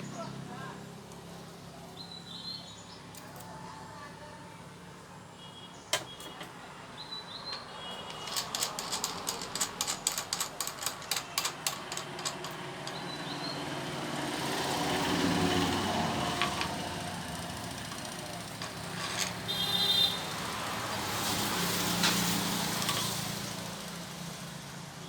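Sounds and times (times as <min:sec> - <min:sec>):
passing vehicle: 0:12.6 - 0:25.0.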